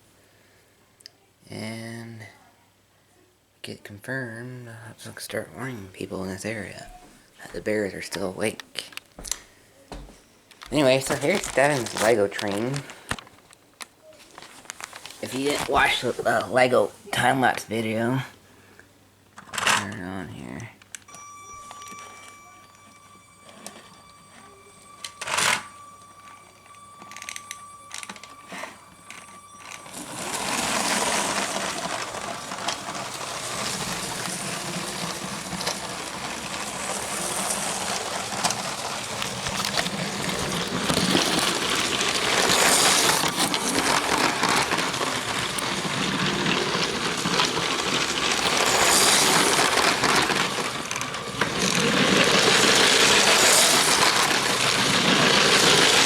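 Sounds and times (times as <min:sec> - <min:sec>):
toy train wheels clattering on track: 0:10.6 - 0:13.2, 0:21.0 - 0:56.0
small electric motor whirring: 0:22.5 - 0:43.9, 0:46.3 - 0:56.0.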